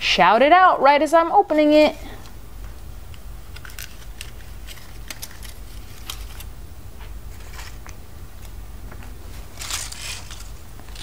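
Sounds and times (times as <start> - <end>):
crinkling rustle: 3.5 - 6.5, 7.3 - 11.0.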